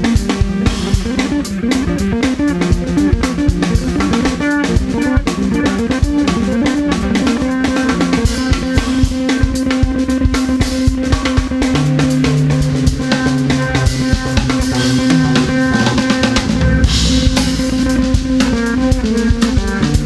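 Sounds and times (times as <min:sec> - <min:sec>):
bass guitar: 0:00.0 - 0:20.0
drum kit: 0:00.0 - 0:20.0.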